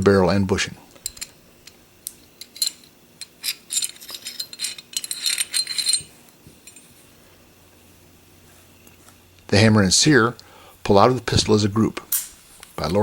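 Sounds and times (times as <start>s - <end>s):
metal parts clinking and scraping: 0.9s - 7.2s.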